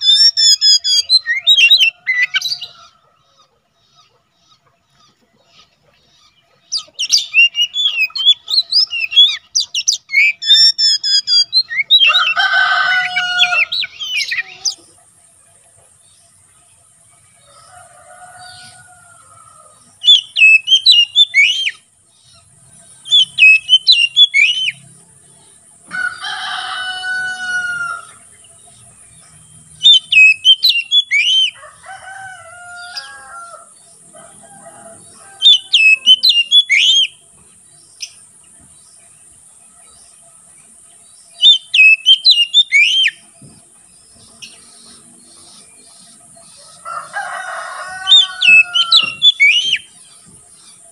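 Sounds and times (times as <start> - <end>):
bird whistled song: 0.0 - 2.8, 6.2 - 12.4, 20.0 - 21.9, 23.0 - 24.9, 29.3 - 31.6, 35.4 - 37.2, 41.3 - 43.6, 48.0 - 50.1
rooster crowing: 1.4 - 3.6, 11.4 - 14.8, 17.4 - 19.8, 25.9 - 28.3, 30.7 - 36.8, 46.5 - 49.9.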